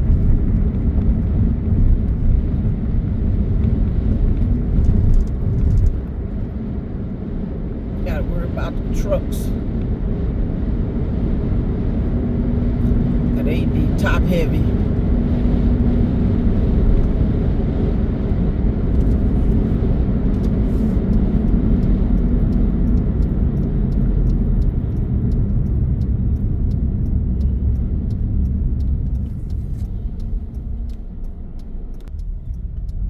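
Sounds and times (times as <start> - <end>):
car road and wind noise: 0.0 - 33.0.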